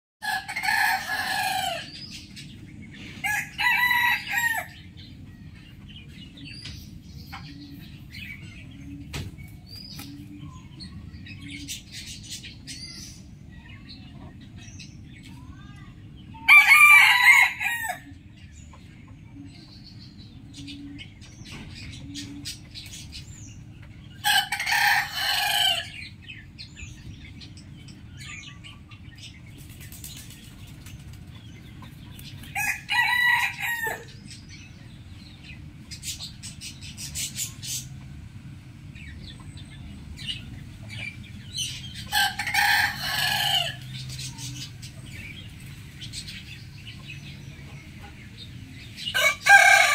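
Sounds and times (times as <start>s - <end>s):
rooster crowing: 3.2s - 4.8s, 16.5s - 18.1s, 24.2s - 25.9s, 32.6s - 34.1s, 42.1s - 43.8s, 49.1s - 49.9s.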